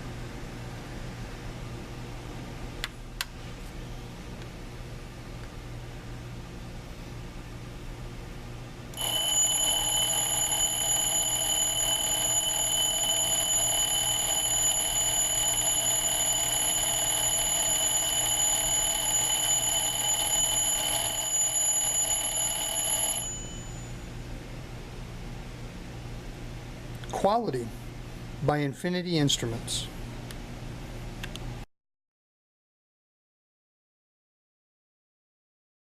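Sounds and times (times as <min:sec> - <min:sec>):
alarm clock bell ringing: 0:09.0 - 0:24.0.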